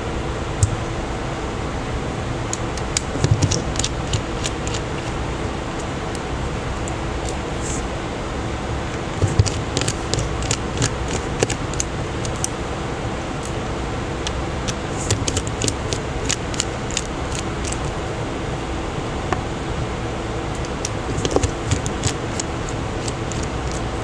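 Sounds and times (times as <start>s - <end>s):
ventilation hum: 0.0s - 24.0s
small tools clicking and tapping: 20.6s - 23.8s.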